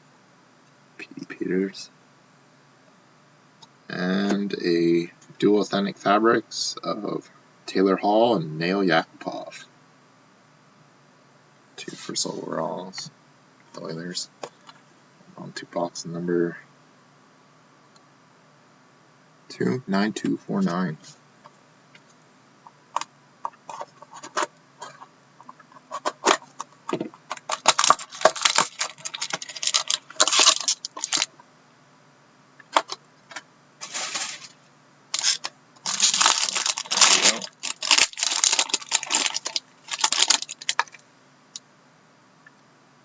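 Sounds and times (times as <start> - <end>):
cardboard and wrapping rustling: 25.9 - 31.3, 33.8 - 34.6, 35.2 - 41.0.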